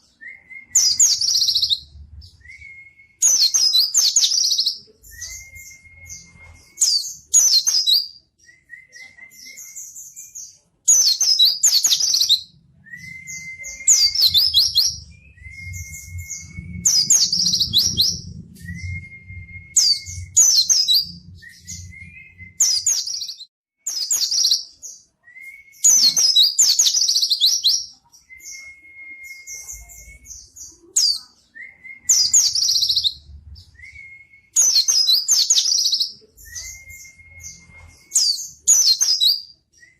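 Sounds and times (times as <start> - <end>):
bird twittering song: 0.0 - 25.1, 25.8 - 39.9
thin whistled note: 12.9 - 22.9.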